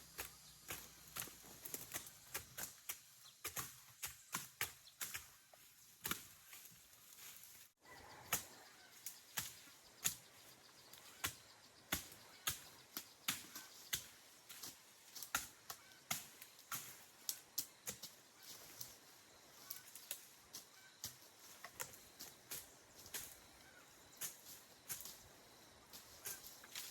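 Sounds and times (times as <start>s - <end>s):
hand tool chopping vegetation: 0.0s - 25.3s, 25.9s - 26.9s.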